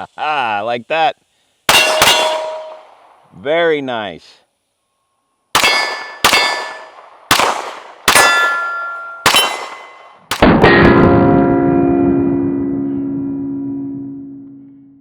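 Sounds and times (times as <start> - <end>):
steel target clanging: 1.7 - 3.0, 5.6 - 7.1, 8.1 - 11.0
pistol shots: 1.7 - 3.2, 5.5 - 10.7
low ringing tone: 1.8 - 3.0, 8.3 - 9.3, 10.6 - 15.0.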